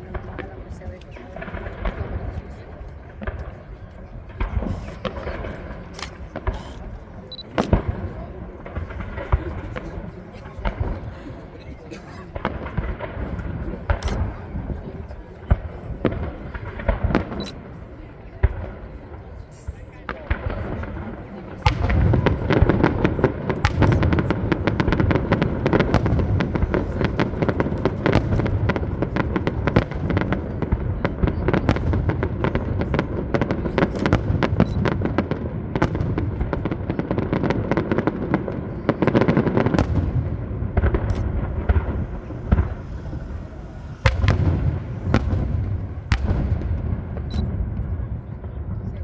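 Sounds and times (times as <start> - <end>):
fireworks bangs and crackles: 0.0 - 49.0
deep rumble of booms: 20.3 - 49.0.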